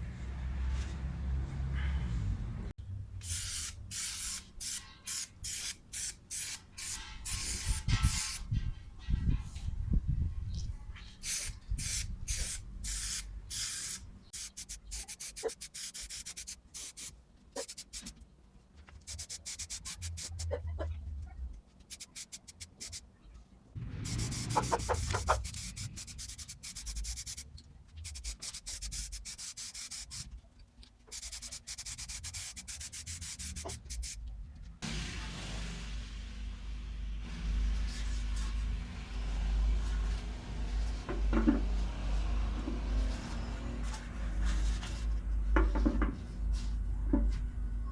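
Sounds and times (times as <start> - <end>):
sandpaper scraping over metal: 3.3 - 8.8, 11.2 - 18.1, 19.1 - 20.6, 21.9 - 23.1, 24.0 - 30.4, 31.1 - 34.2.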